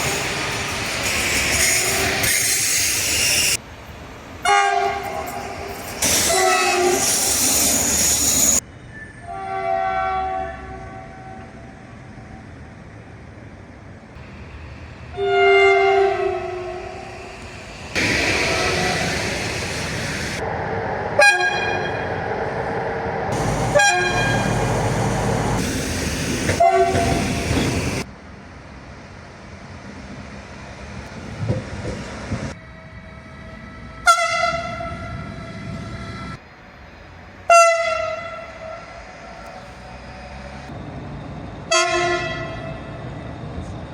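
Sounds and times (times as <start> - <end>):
passing train: 0.0 - 43.9
train horn blasts: 4.4 - 5.7, 6.3 - 7.1, 9.2 - 11.7, 15.1 - 17.1, 21.2 - 22.1, 23.4 - 25.0, 26.5 - 27.4, 34.0 - 35.9, 37.5 - 39.0, 41.7 - 42.8.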